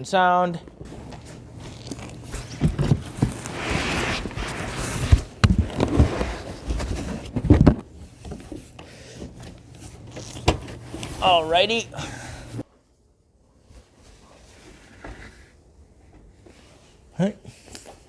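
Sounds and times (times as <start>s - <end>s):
packaging rustling scrape: 1.6s - 7.4s.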